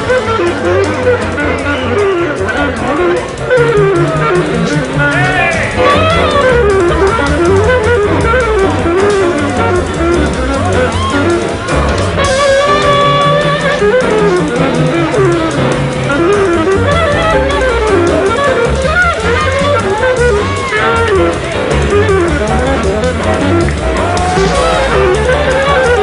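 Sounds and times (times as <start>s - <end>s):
jazz lead line: 0.0s - 26.0s
steady low bass: 17.1s - 26.0s.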